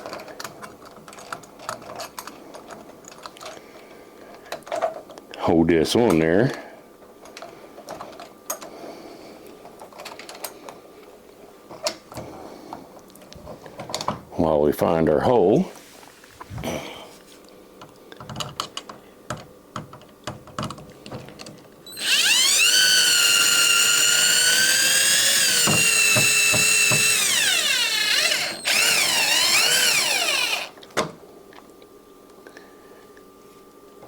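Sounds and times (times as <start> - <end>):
power drill motor whining: 21.9 - 30.8.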